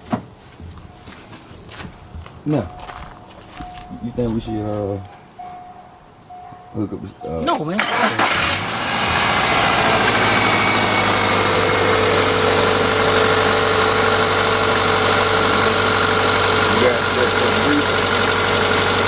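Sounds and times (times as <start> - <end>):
car engine idling rough: 8.2 - 19.0.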